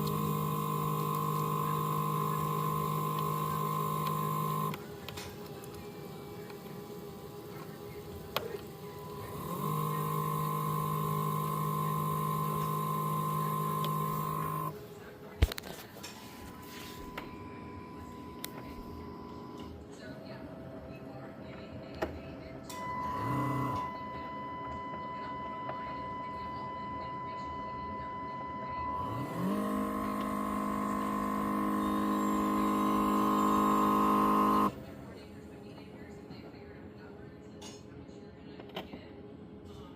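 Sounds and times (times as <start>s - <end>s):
motors whining: 0.0s - 15.6s, 16.3s - 19.8s, 22.6s - 34.9s.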